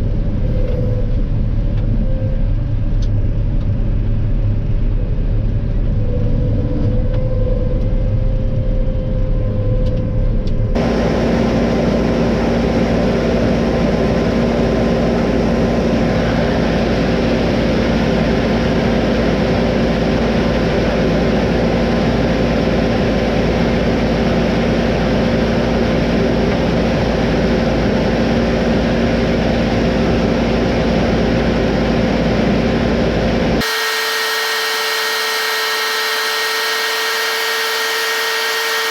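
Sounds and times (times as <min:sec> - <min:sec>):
high whining tones: 0:33.6 - 0:38.9.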